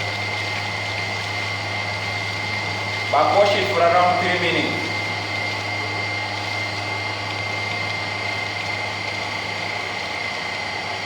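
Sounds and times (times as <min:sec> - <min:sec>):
thin high whine: 0:00.0 - 0:08.5
pool pump humming: 0:00.0 - 0:11.0.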